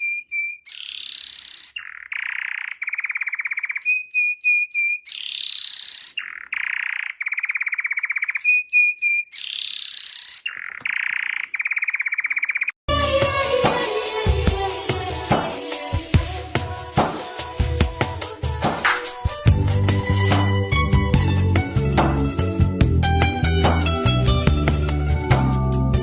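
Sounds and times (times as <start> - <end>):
looped bird call: 0.0 - 12.8.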